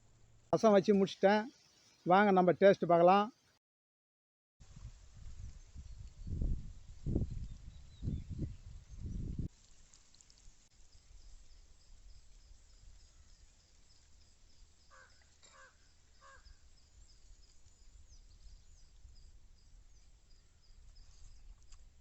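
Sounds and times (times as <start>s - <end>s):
faint high chirp: 10.9s - 21.9s
crow cawing: 14.9s - 16.6s.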